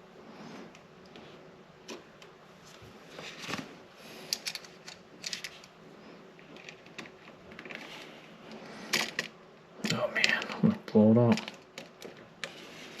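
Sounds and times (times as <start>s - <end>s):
hands scraping and rustling: 11.3s - 13.0s.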